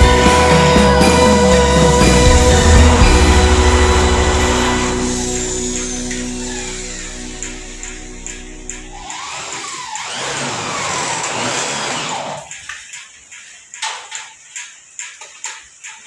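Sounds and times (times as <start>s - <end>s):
power tool running: 0.1s - 12.5s.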